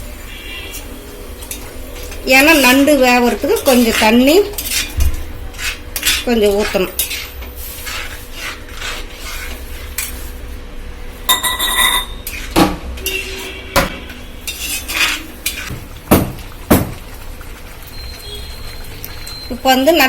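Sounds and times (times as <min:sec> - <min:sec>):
metal utensils against cooking pot: 0:01.5 - 0:10.2, 0:11.3 - 0:15.7
ringing metallic clang: 0:11.3 - 0:12.2.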